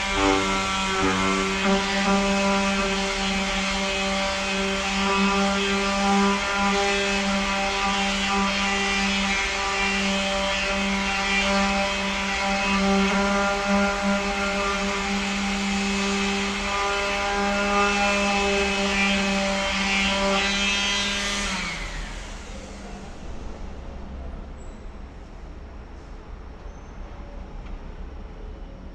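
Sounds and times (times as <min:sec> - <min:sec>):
electric sander on metal: 0:00.0 - 0:22.9
sander winding down: 0:00.0 - 0:23.5.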